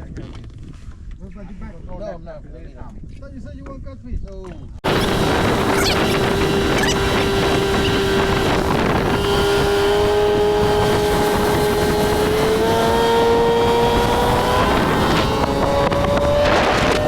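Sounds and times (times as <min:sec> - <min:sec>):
boat motor running: 0:04.8 - 0:17.0
wind and water rushing: 0:04.8 - 0:17.0.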